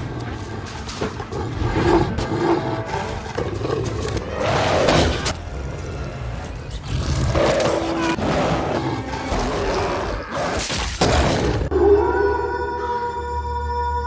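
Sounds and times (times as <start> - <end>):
snarling: 0.0 - 12.0
eerie music chord: 11.7 - 14.0.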